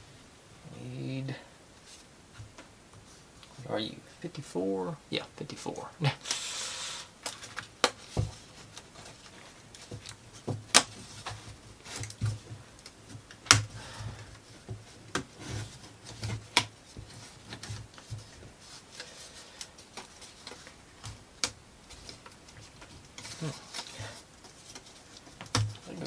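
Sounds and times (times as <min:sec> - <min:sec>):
plywood pieces clicking and tapping: 0:07.2 - 0:15.3, 0:19.0 - 0:26.0.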